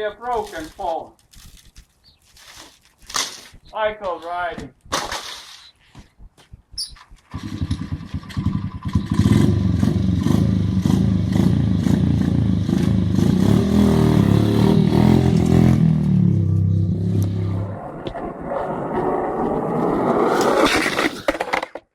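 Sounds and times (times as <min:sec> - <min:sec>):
motorcycle engine revving: 0:06.7 - 0:19.1.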